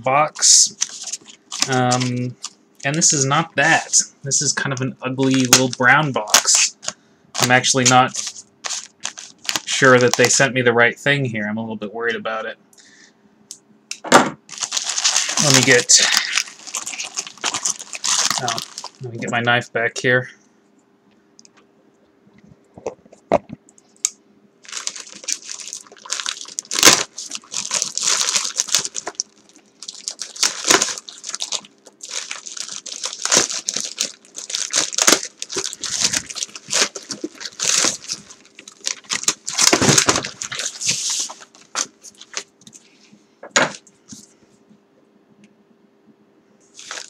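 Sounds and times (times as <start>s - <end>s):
faint steady hum: 0.0s - 47.0s
packing tape ripping: 0.4s - 2.3s, 7.4s - 10.4s, 14.5s - 19.0s, 24.6s - 42.4s.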